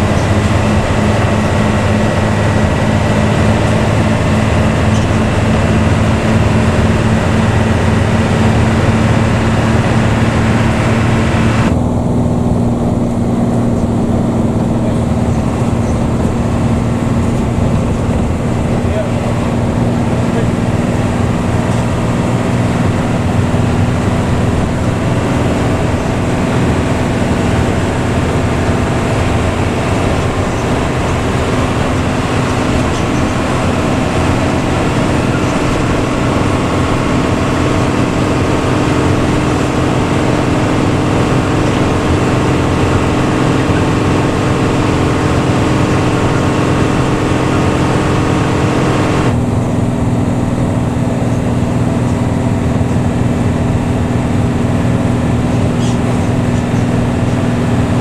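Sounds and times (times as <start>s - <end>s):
bus diesel engine running: 0.0s - 58.0s
road and tyre noise: 0.0s - 58.0s.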